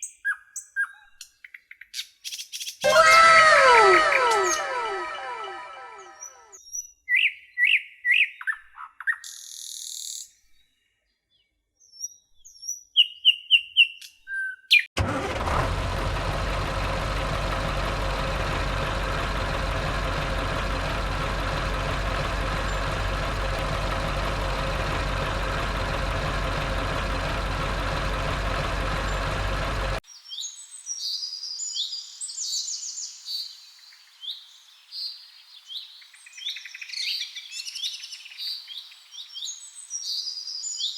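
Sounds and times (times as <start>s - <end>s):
birds chirping: 16.6s - 30.0s.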